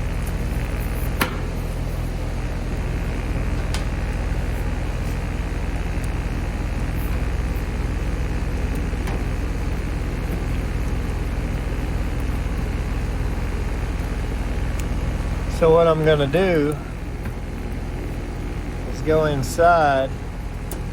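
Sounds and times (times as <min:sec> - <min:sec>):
compressor hum: 0:00.0 - 0:20.9
condenser fan rushing: 0:00.0 - 0:20.9.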